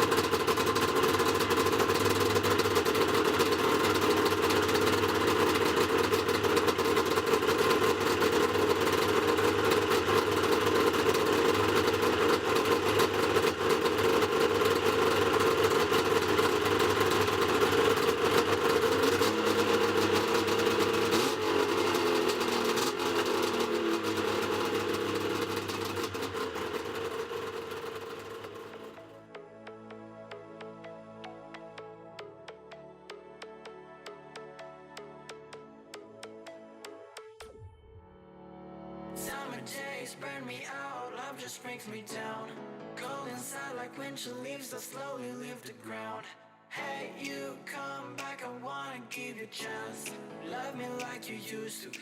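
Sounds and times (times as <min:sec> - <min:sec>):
snowmobile engine idling: 0:00.0 - 0:29.1.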